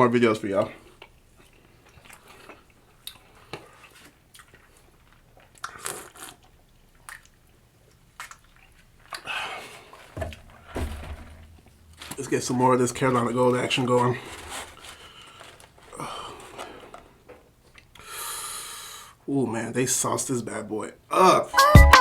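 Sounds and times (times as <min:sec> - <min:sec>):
person chewing and crunching food: 0:00.8 - 0:10.2.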